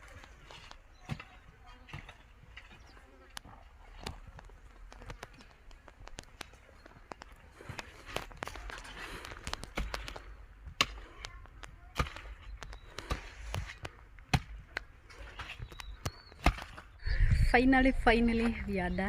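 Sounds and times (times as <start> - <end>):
hoe chopping into soil: 15.2 - 16.8.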